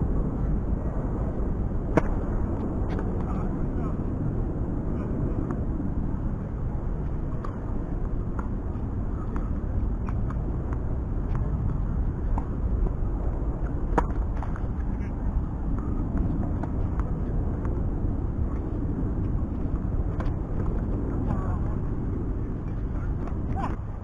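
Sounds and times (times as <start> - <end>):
low outdoor rumble: 0.0 - 24.0
tennis balls struck by rackets: 1.9 - 2.2.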